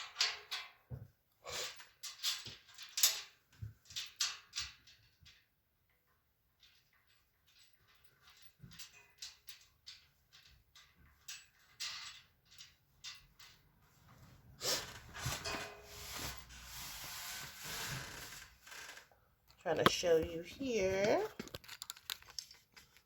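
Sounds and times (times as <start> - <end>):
metal parts clicking: 21.2 - 23.0.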